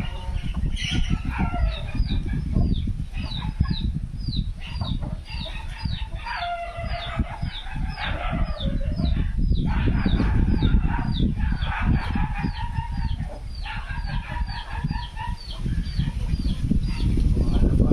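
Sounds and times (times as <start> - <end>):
rooster crowing: 5.3 - 9.3.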